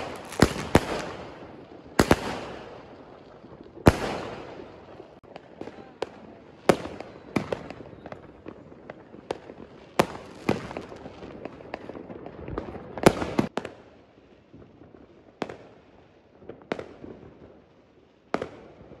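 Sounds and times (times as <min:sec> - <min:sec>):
fireworks banging and crackling: 0:00.0 - 0:19.0.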